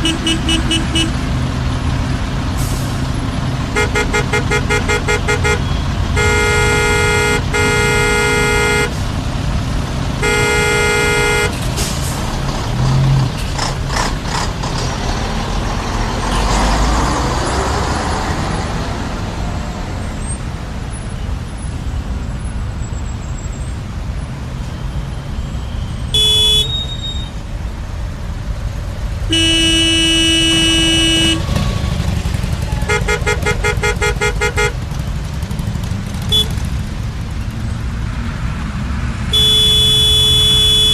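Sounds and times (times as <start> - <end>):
rapid horn beeps: 0.0 - 1.2, 3.8 - 9.0, 10.2 - 11.5, 26.2 - 27.3, 29.3 - 31.4, 32.7 - 34.8
car horns honking: 0.0 - 1.4, 3.6 - 9.1, 10.2 - 11.8, 26.1 - 27.4, 29.3 - 34.9, 36.2 - 36.7, 39.3 - 40.9
idling vehicles rumble: 0.0 - 40.9.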